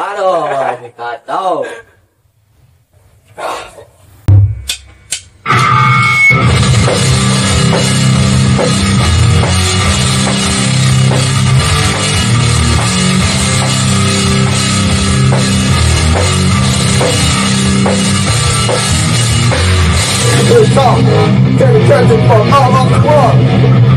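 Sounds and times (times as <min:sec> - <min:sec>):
heavy rock band playing: 0:05.4 - 0:23.9.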